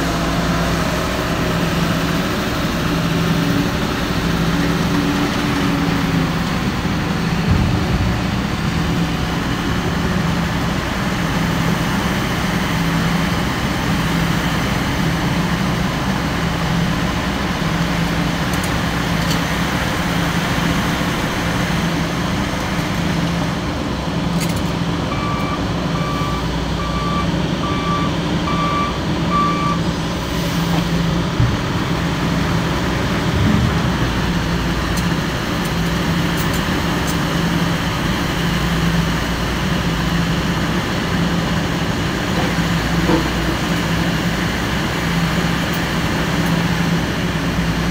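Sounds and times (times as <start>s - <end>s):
heavy diesel engine running: 0.0s - 47.9s
reversing alarm beeping: 25.1s - 29.8s.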